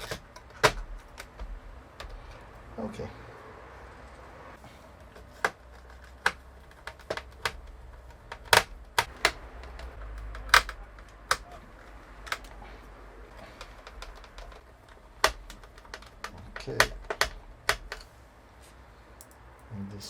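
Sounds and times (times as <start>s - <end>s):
plastic and metal parts clicking: 0.0s - 2.6s, 5.0s - 18.1s.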